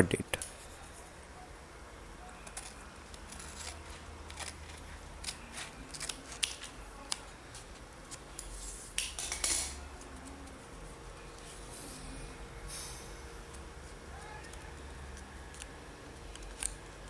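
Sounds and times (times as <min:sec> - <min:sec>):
scissors cutting paper: 0:02.4 - 0:08.5, 0:14.4 - 0:17.0.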